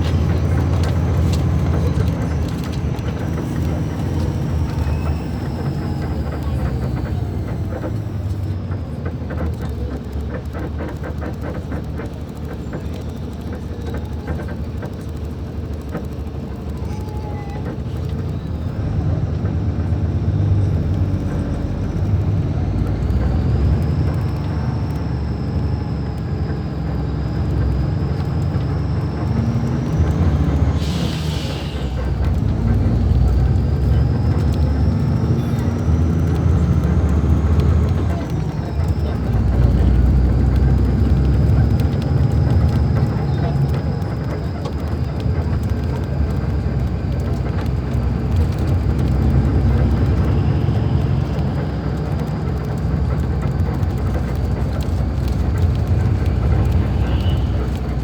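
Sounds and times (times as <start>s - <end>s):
bus diesel engine rumbling: 0.0s - 58.0s.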